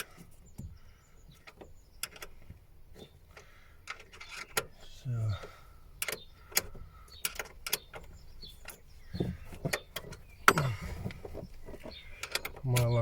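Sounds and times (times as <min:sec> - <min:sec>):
tools clicking and knocking: 0:06.0 - 0:13.0.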